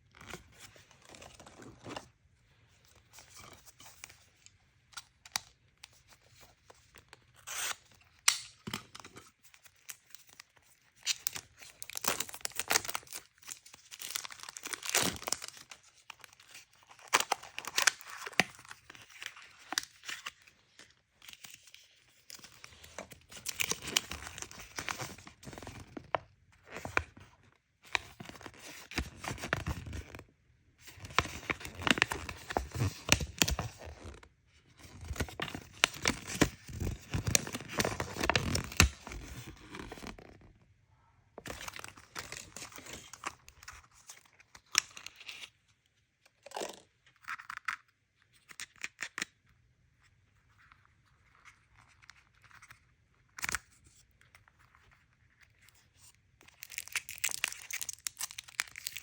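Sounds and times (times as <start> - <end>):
packaging torn and crinkled: 11.0 - 20.1, 23.4 - 26.0, 34.9 - 40.4, 56.4 - 59.0.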